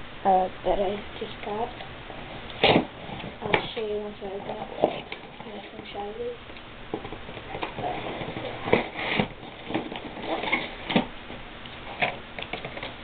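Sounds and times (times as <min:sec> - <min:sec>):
packaging rustling and clicking: 0:07.0 - 0:11.1.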